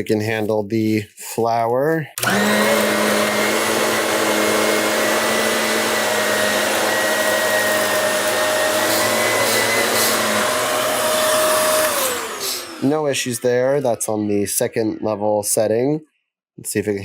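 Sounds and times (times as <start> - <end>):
vacuum cleaner running on carpet: 2.2 - 13.4.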